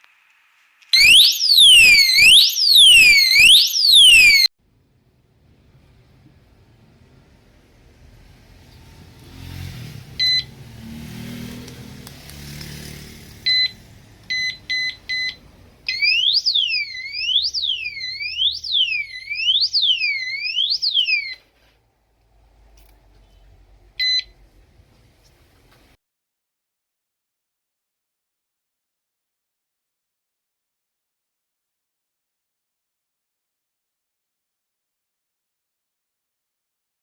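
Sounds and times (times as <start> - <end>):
alarm beeps: 1.0 - 4.5, 10.2 - 10.5, 13.5 - 21.4
siren sweeping in pitch: 1.0 - 4.5, 13.5 - 21.4.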